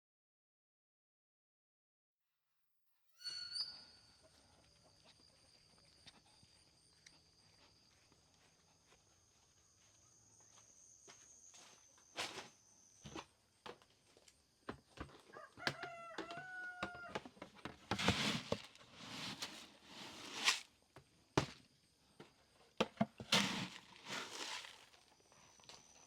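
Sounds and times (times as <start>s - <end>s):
rooster crowing: 15.3s - 17.2s
loud rustling and crunching: 17.9s - 20.7s, 23.1s - 25.2s.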